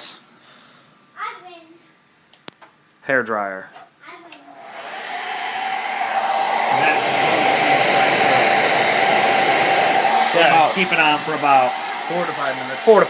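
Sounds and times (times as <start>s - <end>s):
hair dryer blowing with high whine: 4.5s - 13.0s.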